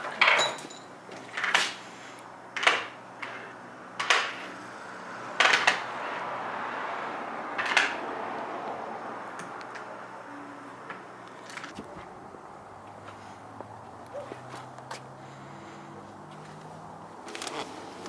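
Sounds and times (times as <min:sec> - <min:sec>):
metal tools clinking and clattering: 0:00.0 - 0:01.8.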